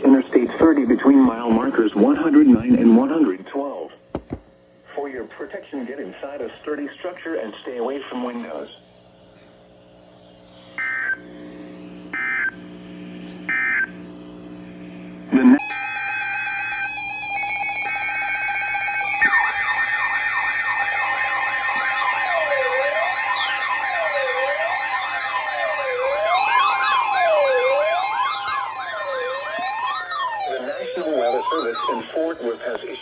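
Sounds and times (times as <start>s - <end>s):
siren-like rising and falling sweeps: 15.6s - 33.0s
electronic alert tone: 17.4s - 32.3s.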